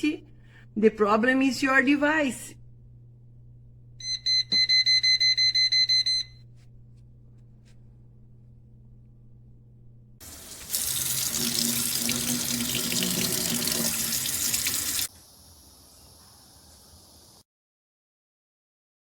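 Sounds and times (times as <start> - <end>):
low steady hum: 0.0 - 15.1
water tap running: 10.2 - 15.1.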